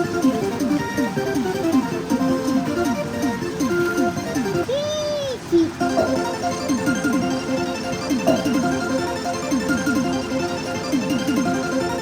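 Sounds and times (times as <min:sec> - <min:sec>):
plucked-string music: 0:05.8 - 0:12.0.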